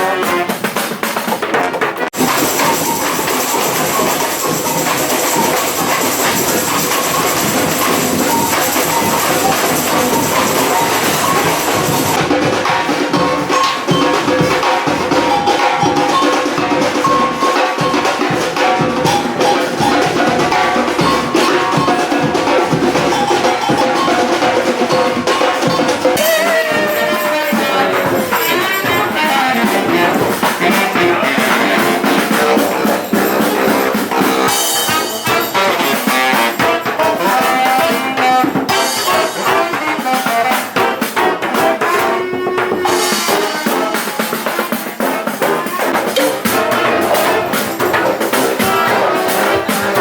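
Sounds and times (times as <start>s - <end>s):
brass street band with drums: 0.0s - 50.0s.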